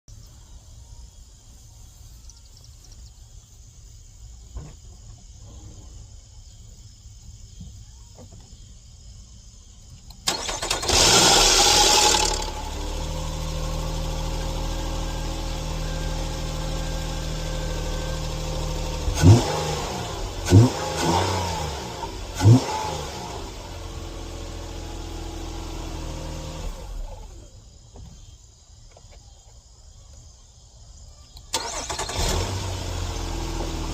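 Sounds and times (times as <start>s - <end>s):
car engine cranking and rattling: 10.0s - 27.5s, 31.5s - 33.9s
car engine idling: 10.0s - 27.7s.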